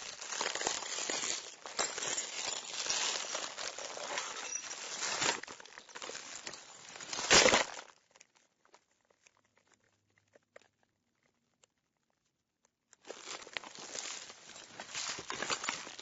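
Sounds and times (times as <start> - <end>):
glass fragments tinkling: 0.0 - 7.7, 13.9 - 16.0
glass debris crunching: 0.0 - 7.9, 13.2 - 16.0.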